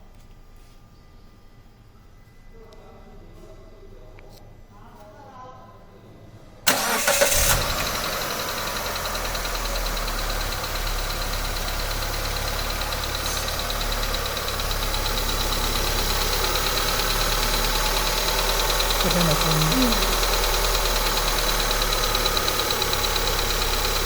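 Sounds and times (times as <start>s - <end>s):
car engine idling: 6.7s - 24.0s
fast steady engine ticking: 6.7s - 24.0s.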